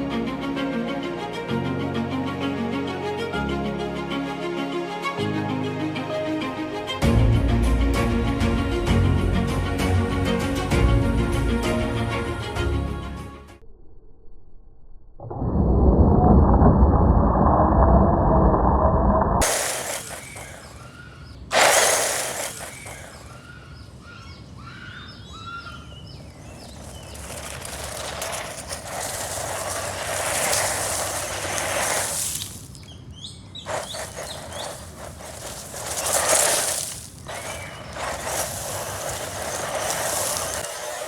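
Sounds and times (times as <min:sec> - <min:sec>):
toy car driving over rough ground: 0:19.4 - 0:24.6, 0:25.2 - 0:41.0
birds chirping: 0:19.4 - 0:41.0.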